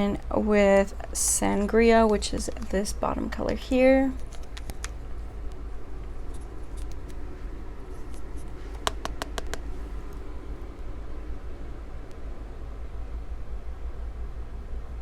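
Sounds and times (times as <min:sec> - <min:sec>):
low room hum: 0:00.0 - 0:15.0
makeup brush clicks and taps: 0:04.3 - 0:05.0, 0:08.7 - 0:09.7.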